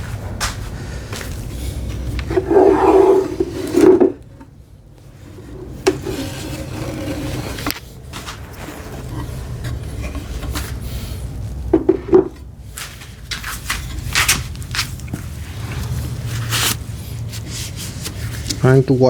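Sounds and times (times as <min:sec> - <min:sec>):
wooden parts and clamps knocking: 0:11.7 - 0:12.4.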